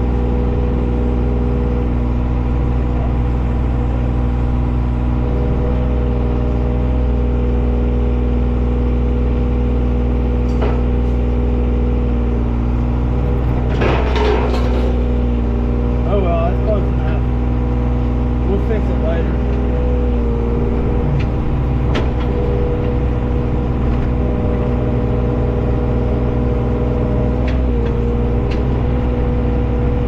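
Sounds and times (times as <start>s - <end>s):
excavator diesel engine running: 0.0s - 30.0s
metal clanks and rattles: 13.3s - 15.2s, 21.0s - 24.8s.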